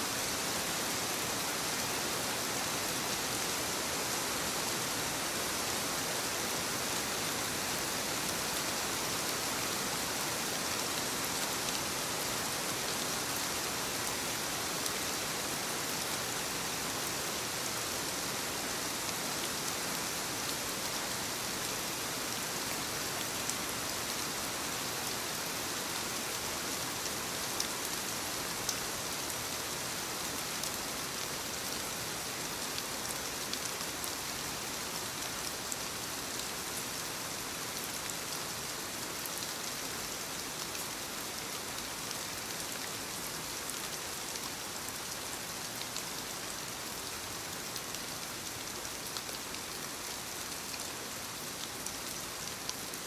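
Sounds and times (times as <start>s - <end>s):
rain falling on leaves: 0.0s - 53.0s.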